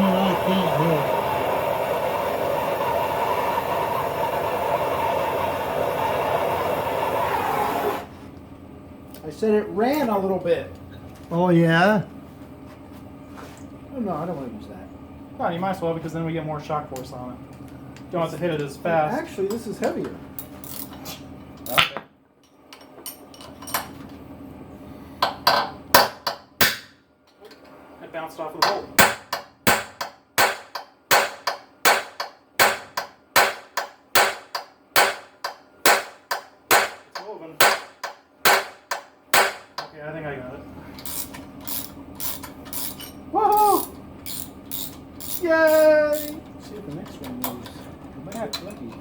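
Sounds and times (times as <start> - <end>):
loud steady roar: 0.0 - 8.2
hammer striking steel punch: 26.0 - 27.0, 28.6 - 39.9.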